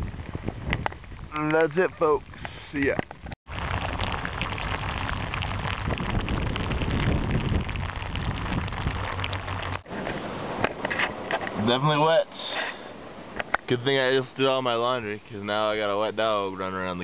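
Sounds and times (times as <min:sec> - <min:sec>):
steady rain patter: 0:00.0 - 0:17.0
low rumble: 0:03.2 - 0:09.9.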